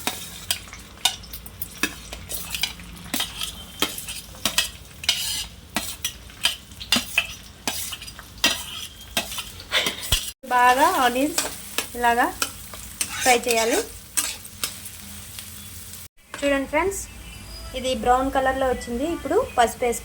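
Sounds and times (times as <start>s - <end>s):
spatula scraping a pan: 0.0s - 10.4s, 11.3s - 15.0s
onions sizzling in oil: 0.0s - 16.7s.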